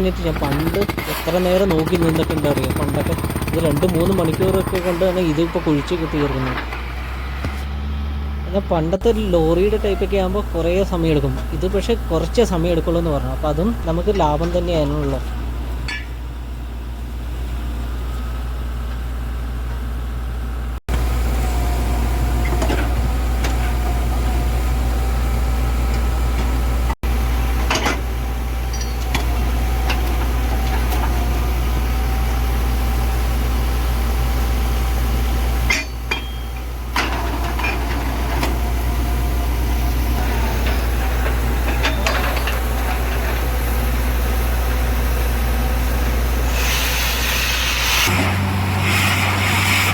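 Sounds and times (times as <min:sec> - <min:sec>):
drilling rig engine drone: 0:20.3 - 0:49.9.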